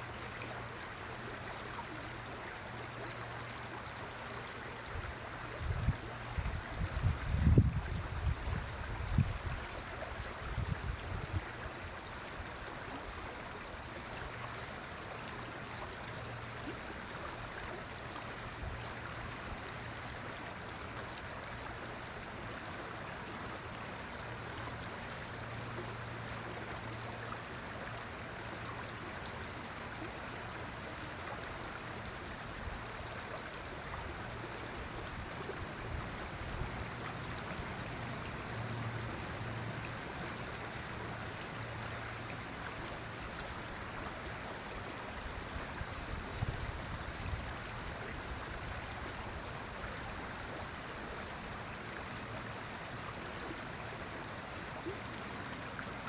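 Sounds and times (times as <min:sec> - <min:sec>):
river water rushing: 0:11.6 - 0:56.0.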